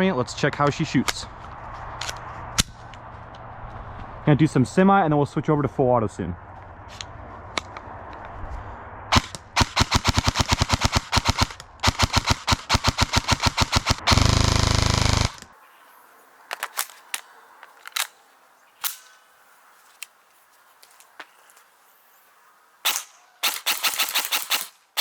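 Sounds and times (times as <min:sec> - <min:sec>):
airsoft rifle firing: 0:09.1 - 0:15.5, 0:22.8 - 0:25.0.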